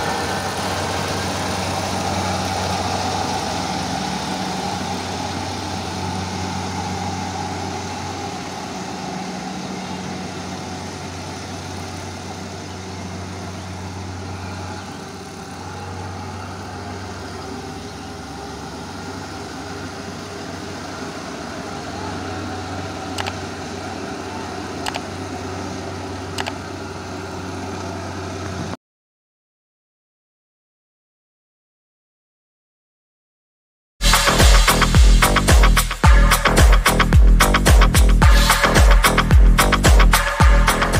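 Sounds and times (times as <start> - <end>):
combine harvester engine droning: 0.0 - 28.8, 34.0 - 40.9
sharp clicks: 23.1 - 23.4, 24.8 - 25.1, 26.3 - 26.6.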